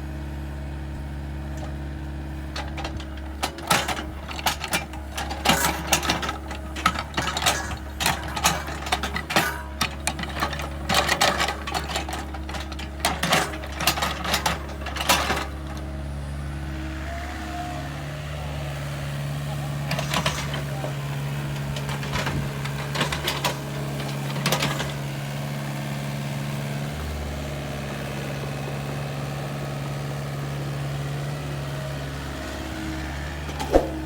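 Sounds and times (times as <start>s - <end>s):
excavator engine drone: 0.0s - 34.0s
soil and stones scraping: 33.5s - 34.0s.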